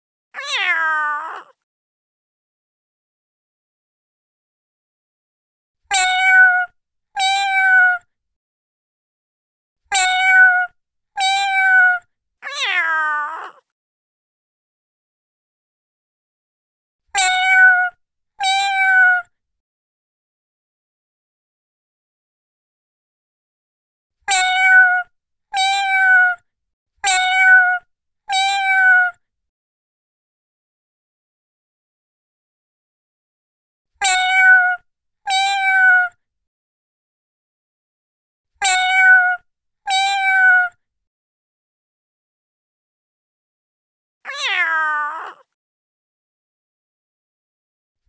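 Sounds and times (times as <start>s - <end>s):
cat meowing: 0.4s - 1.6s, 5.9s - 8.0s, 9.9s - 13.6s, 17.2s - 19.3s, 24.3s - 26.4s, 27.0s - 29.2s, 34.0s - 36.2s, 38.6s - 40.8s, 44.3s - 45.5s.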